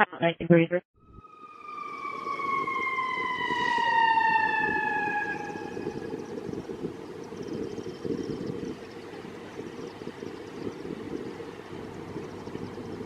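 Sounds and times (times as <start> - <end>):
fire truck siren: 1.0 - 7.3
truck rumbling: 1.6 - 13.0.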